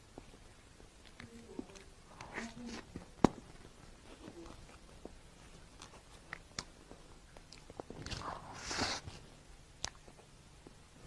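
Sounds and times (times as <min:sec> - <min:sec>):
chewing mouth noises: 0:03.6 - 0:09.0, 0:09.8 - 0:10.8.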